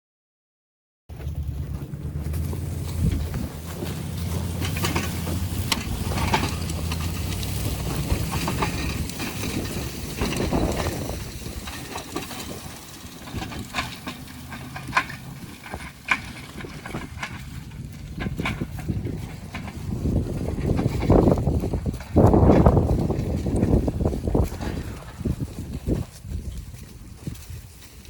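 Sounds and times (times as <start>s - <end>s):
vehicle engine running: 1.1s - 28.0s.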